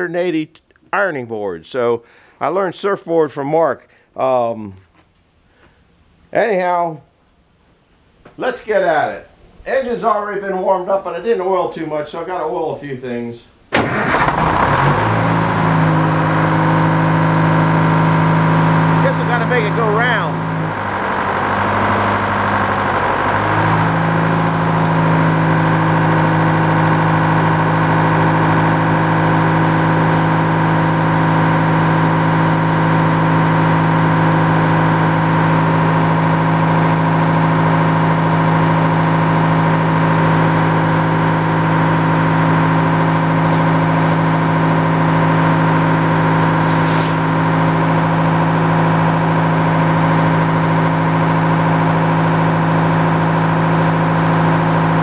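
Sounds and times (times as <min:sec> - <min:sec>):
sawmill engine running: 0:13.7 - 0:55.0.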